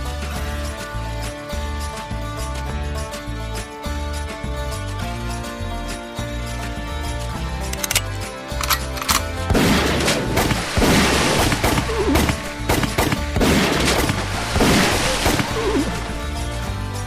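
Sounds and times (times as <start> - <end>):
background music with bass line: 0.0 - 17.0
gunshot sound effects: 9.5 - 15.5.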